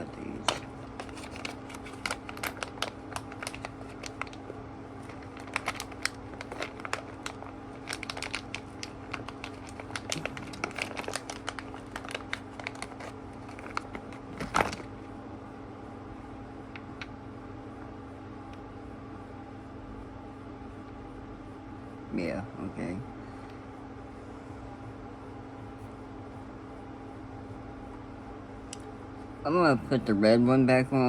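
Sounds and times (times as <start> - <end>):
steady low hum: 0.0 - 31.0
plastic bag crinkling: 0.4 - 15.0.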